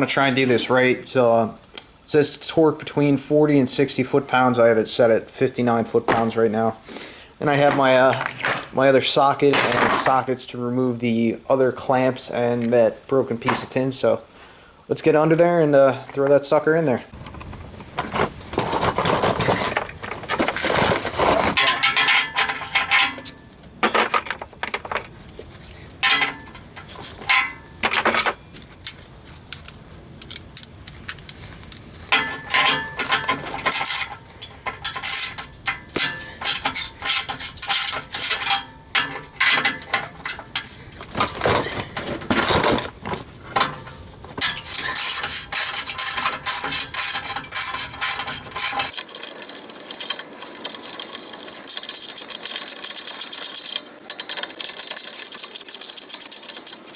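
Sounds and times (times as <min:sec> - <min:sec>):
metal tools clinking: 0:07.6 - 0:08.8, 0:18.0 - 0:25.1, 0:26.0 - 0:56.9.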